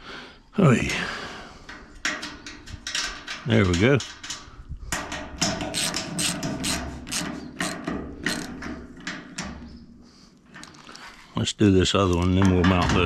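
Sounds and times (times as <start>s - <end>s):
ratchet wrench clicking rapidly: 5.7s - 8.5s.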